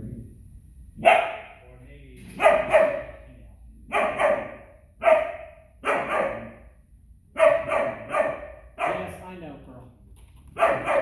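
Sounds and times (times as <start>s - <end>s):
dog barking: 1.0s - 1.6s, 2.4s - 3.2s, 3.9s - 6.7s, 7.3s - 9.2s, 10.6s - 11.0s.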